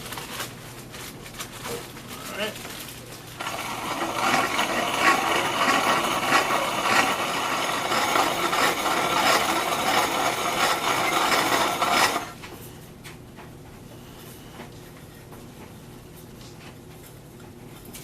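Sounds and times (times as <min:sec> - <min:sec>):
grain mill grinding: 0:03.4 - 0:12.4.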